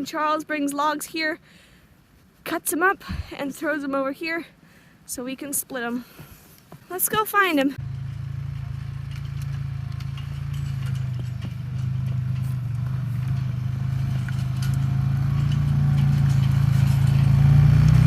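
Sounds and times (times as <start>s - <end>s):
engine idling: 7.8s - 17.4s.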